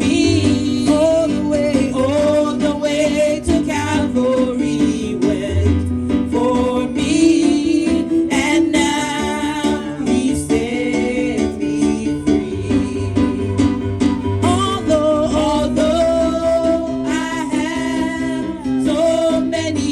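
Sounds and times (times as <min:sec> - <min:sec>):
gospel singing with instruments: 0:00.0 - 0:19.9.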